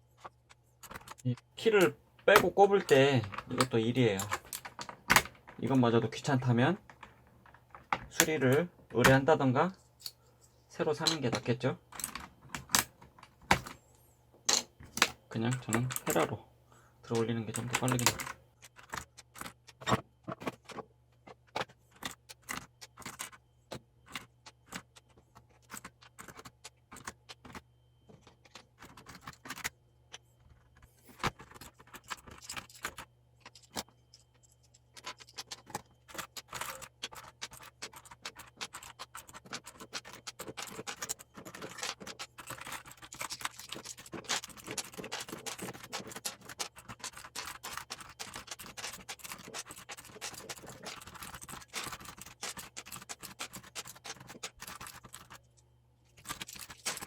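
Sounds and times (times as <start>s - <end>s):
scraping and scratching: 0.0s - 10.0s, 17.1s - 57.0s
keycaps popping off clicks: 35.0s - 55.4s.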